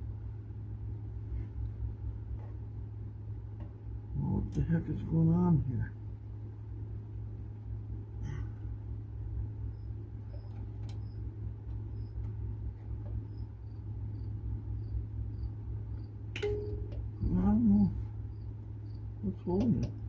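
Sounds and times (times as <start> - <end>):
steady low hum: 0.0 - 20.0
cricket chirping: 8.2 - 20.0.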